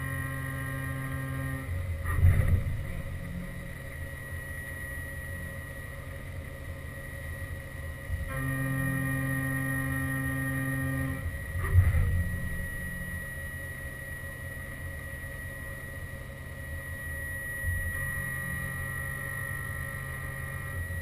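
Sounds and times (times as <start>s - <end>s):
low machine hum with high tone: 0.0s - 21.0s
machine motor whine: 0.0s - 21.0s
loud mechanical clunk: 2.0s - 3.4s, 11.6s - 12.4s.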